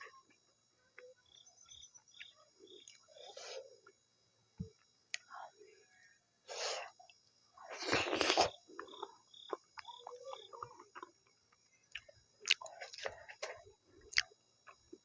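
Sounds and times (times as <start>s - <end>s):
chewing and lip smacks: 7.7s - 11.3s, 11.9s - 14.9s.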